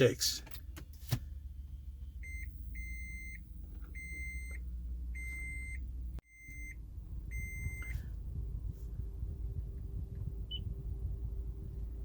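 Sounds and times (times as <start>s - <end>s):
low steady rumble: 0.0s - 12.0s
car warning chime beeping: 2.0s - 8.1s.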